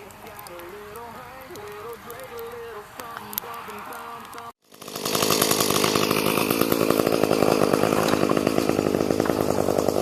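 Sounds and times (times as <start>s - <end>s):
two-stroke chainsaw engine running: 4.6s - 10.0s.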